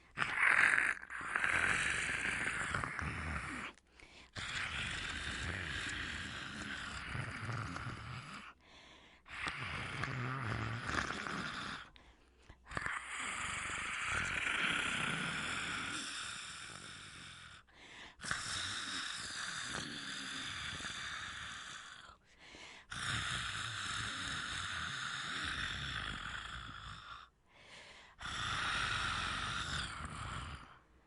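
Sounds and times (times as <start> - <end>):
person growling like a monster: 0.0 - 8.6, 12.7 - 17.6, 28.2 - 30.8.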